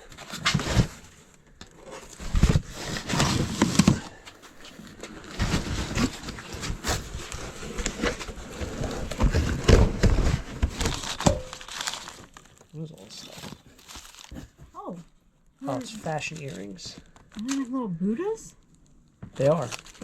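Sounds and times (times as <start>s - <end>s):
boxes being handled: 0.0s - 14.9s, 19.2s - 20.0s
rustling: 0.0s - 17.8s, 18.6s - 20.0s.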